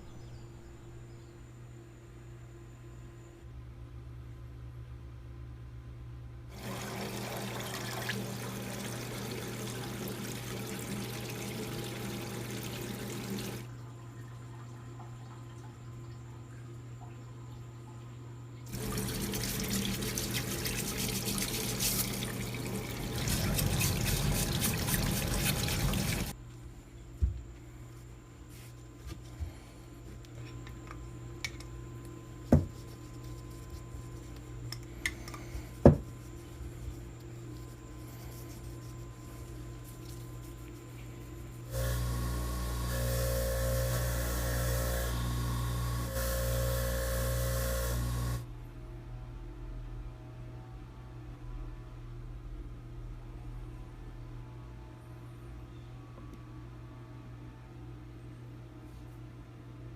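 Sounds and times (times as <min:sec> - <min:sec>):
steady low hum: 0:00.0 - 0:59.9
water running from a tap: 0:06.6 - 0:13.7, 0:18.7 - 0:26.3.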